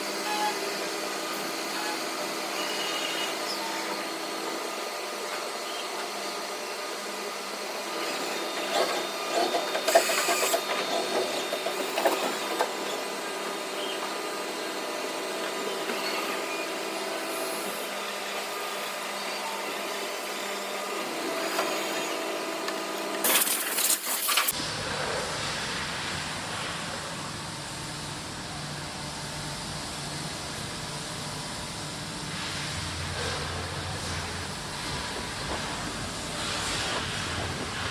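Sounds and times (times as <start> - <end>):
milling machine whining: 0.0 - 24.6.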